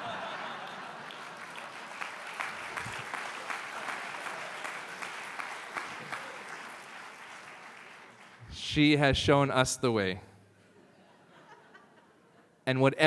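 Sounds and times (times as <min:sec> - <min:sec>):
crowd applauding: 0:00.0 - 0:08.9.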